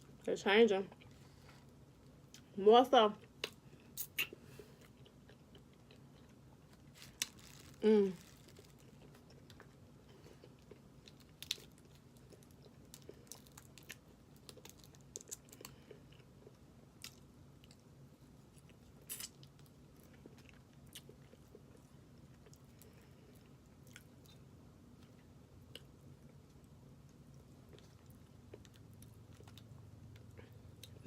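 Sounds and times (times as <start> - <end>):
person chewing: 3.2 - 17.9, 18.5 - 24.4.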